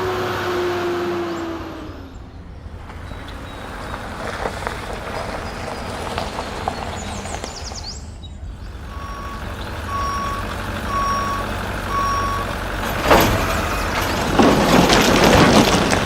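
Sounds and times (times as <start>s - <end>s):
loud rough rattling: 1.2s - 16.0s
toy reversing beeper: 8.9s - 12.5s.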